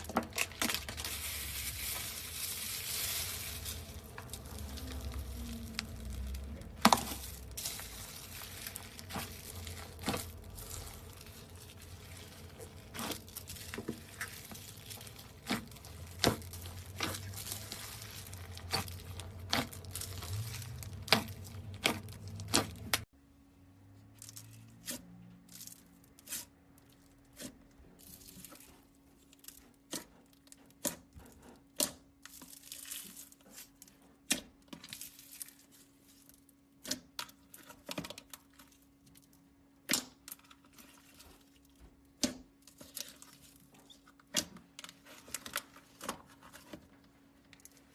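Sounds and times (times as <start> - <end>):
slime crackling and popping: 0.0 - 23.1.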